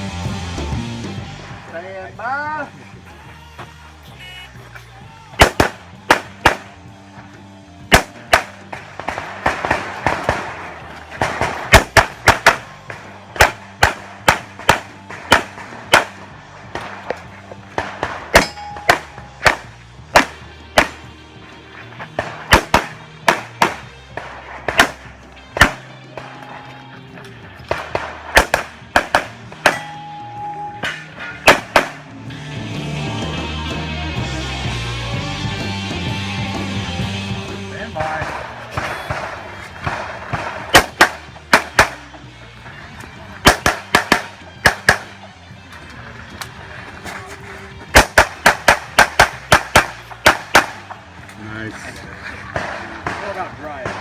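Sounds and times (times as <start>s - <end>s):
handgun shots: 5.4s - 6.7s, 7.9s - 21.1s, 22.2s - 26.4s, 27.6s - 30.1s, 30.8s - 32.1s, 38.1s - 42.1s, 43.4s - 45.2s, 47.9s - 51.0s.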